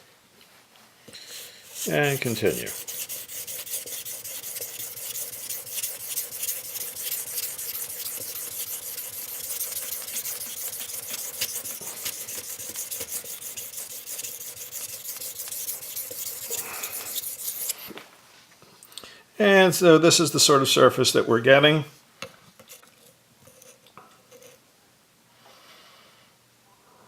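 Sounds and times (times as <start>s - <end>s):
knife scraping on sharpening plate: 1.2s - 17.9s.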